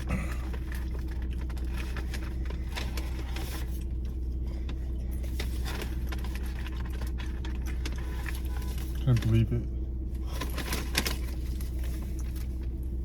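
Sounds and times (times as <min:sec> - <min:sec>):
low hum: 0:00.0 - 0:13.0
chewing: 0:00.3 - 0:03.2
packaging crackling: 0:10.2 - 0:12.8.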